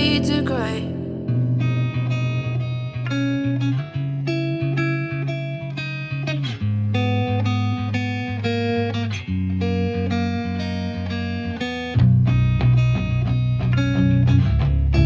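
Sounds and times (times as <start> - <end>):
guitar instrumental music: 0.0 - 15.0.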